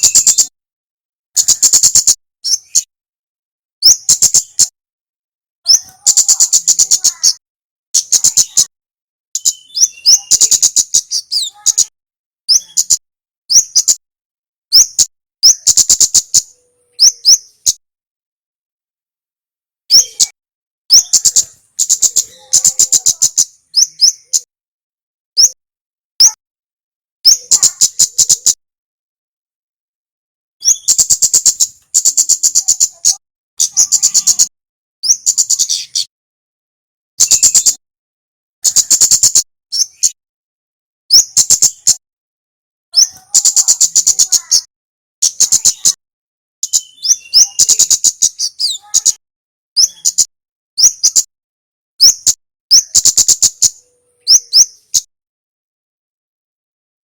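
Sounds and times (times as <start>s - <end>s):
bird high-pitched twittering: 0.0s - 0.6s, 1.4s - 2.9s, 3.8s - 4.8s, 5.6s - 7.4s, 8.0s - 8.7s, 9.4s - 14.0s, 14.7s - 17.8s, 19.9s - 24.5s, 25.4s - 25.6s, 26.2s - 26.4s, 27.2s - 28.6s, 30.6s - 36.1s, 37.2s - 37.8s, 38.6s - 40.2s, 41.1s - 42.0s, 43.0s - 46.0s, 46.6s - 51.3s, 52.0s - 55.1s.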